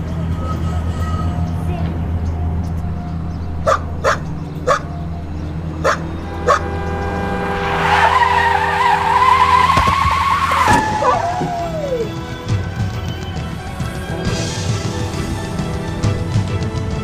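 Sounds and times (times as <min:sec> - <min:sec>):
tyres screeching: 0:00.2 - 0:12.4
dog barking: 0:03.6 - 0:05.0, 0:05.8 - 0:06.6.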